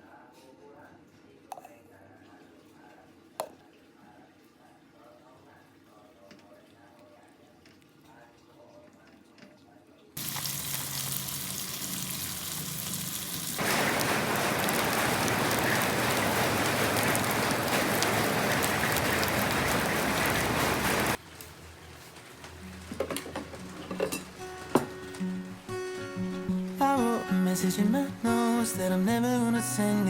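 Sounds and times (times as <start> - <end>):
falling water hissing: 10.2 - 21.2.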